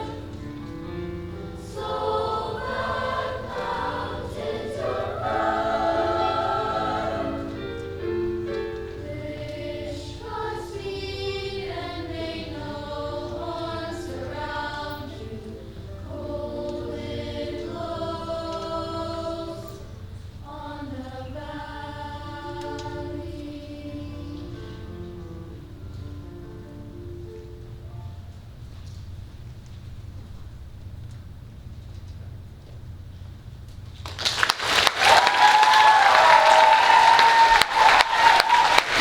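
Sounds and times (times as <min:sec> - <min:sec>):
choir singing folk song: 0:00.0 - 0:25.0.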